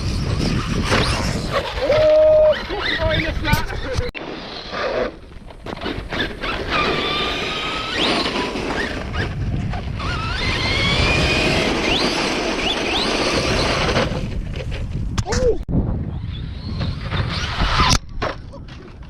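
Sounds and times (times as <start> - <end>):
electric motors whining: 5.8 - 14.4.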